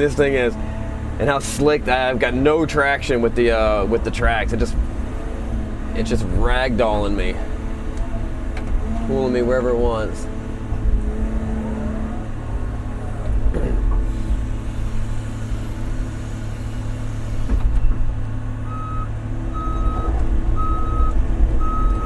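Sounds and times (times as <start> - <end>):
diesel engine running: 0.0 - 22.0
reversing alarm beeps: 18.7 - 22.0.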